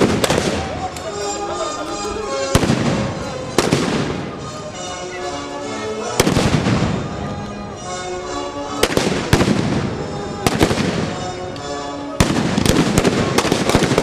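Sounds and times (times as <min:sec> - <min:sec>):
gunshots with ringing tail: 0:00.0 - 0:00.8, 0:08.8 - 0:11.2, 0:12.2 - 0:14.0
background music with held notes: 0:00.0 - 0:14.0.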